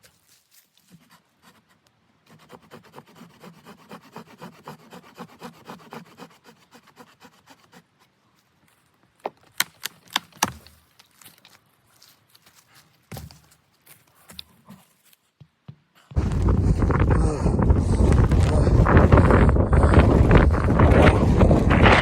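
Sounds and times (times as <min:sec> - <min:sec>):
rubbing or scraping strokes: 0:16.2 - 0:22.0.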